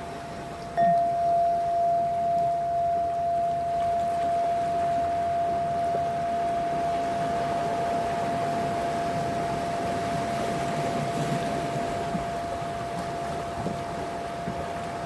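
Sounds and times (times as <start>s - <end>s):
sea waves washing: 0.0s - 15.0s
constant tone: 0.5s - 15.0s.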